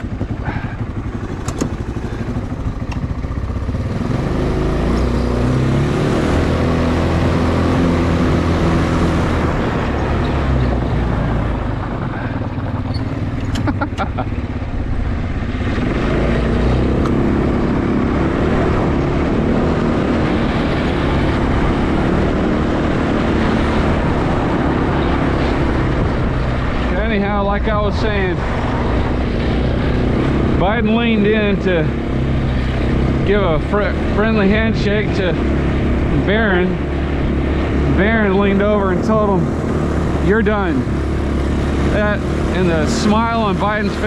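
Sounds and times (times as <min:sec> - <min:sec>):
vehicle engine running: 0:00.0 - 0:44.0
sharp clicks: 0:01.4 - 0:01.8.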